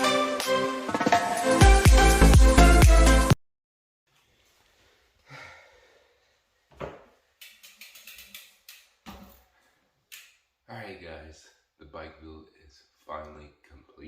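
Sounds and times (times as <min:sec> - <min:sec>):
background music: 0:00.0 - 0:03.4
soft breath: 0:04.2 - 0:06.6.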